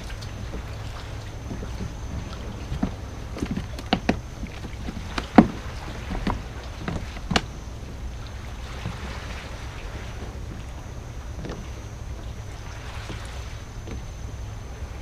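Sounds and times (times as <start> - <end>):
low wind and hull rumble: 0.0 - 15.0.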